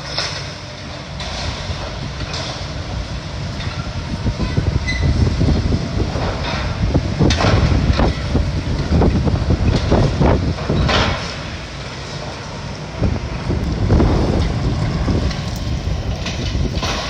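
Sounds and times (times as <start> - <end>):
low machine rumble: 0.0 - 17.0
debris and metal crashing: 13.3 - 17.0.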